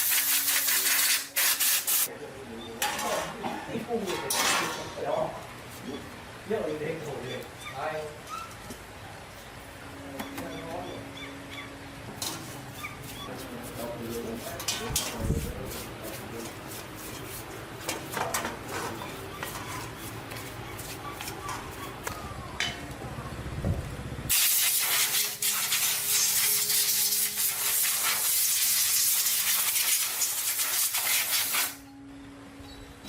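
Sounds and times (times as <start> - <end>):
compressed air hissing: 0.0 - 2.1, 24.3 - 31.8.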